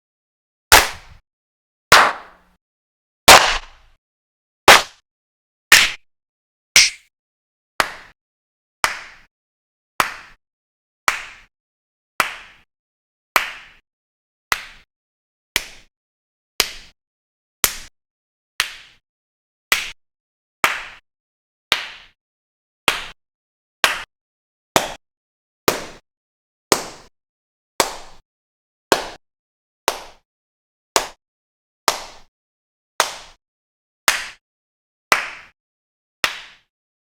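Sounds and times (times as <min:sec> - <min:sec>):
single hand claps: 0:07.8 - 0:08.2, 0:08.8 - 0:09.3, 0:10.0 - 0:10.4, 0:11.1 - 0:11.5, 0:13.4 - 0:13.8, 0:14.5 - 0:14.9, 0:29.9 - 0:30.2, 0:31.0 - 0:31.2, 0:34.1 - 0:34.4, 0:35.1 - 0:35.6, 0:36.2 - 0:36.7.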